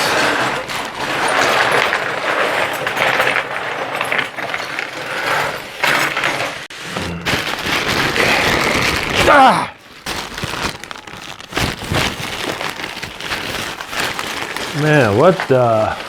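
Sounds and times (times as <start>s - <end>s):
cardboard scraping: 0.0s - 16.0s
packing tape ripping: 6.8s - 16.0s.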